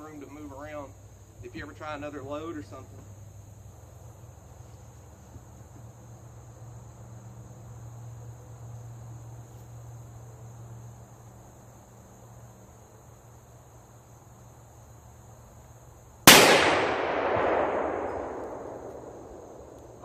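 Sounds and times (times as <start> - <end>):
crickets chirping: 0.0 - 20.0
revolver shot echoing: 16.3 - 19.9.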